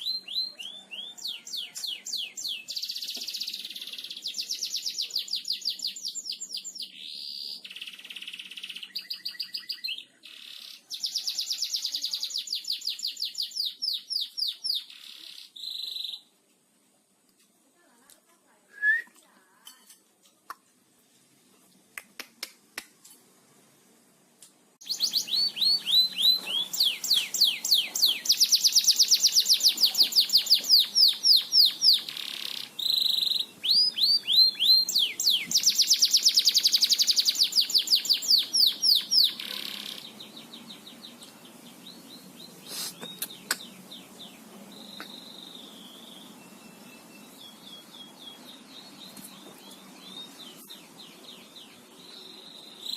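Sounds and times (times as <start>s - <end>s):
canary singing trills: 0.0s - 16.3s, 24.8s - 52.9s
short whistle: 18.8s - 19.2s.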